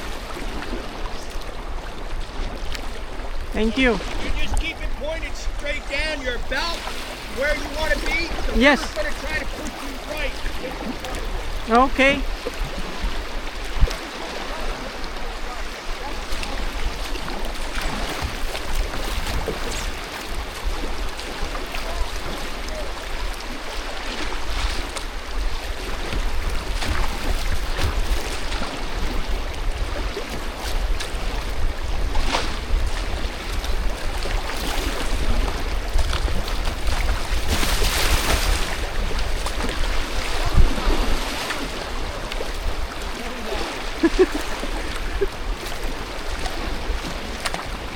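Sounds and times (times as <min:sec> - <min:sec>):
paddle splashes: 0:00.0 - 0:47.9
rushing river water: 0:00.0 - 0:47.9
wind buffeting microphone: 0:24.7 - 0:47.9.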